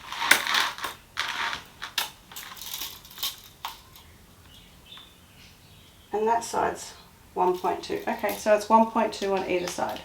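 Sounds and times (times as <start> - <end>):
clicks and rustles of handling: 0.0 - 5.1, 7.4 - 10.0.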